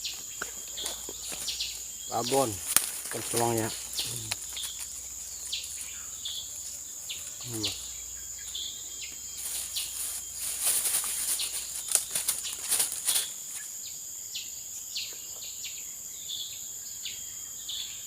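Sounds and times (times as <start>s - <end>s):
high-pitched insect drone: 0.0s - 18.0s
insect chirps: 0.0s - 18.0s
rustling and sharp clicks: 2.6s - 5.0s, 9.4s - 13.6s.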